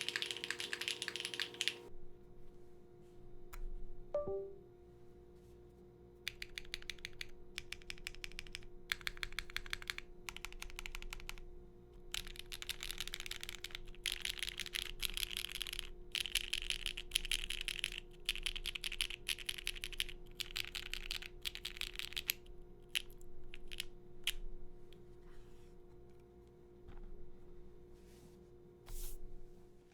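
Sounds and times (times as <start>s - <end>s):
mechanical keyboard typing: 0.0s - 1.9s, 6.3s - 11.4s, 12.1s - 24.4s
faint steady hum: 0.0s - 29.9s.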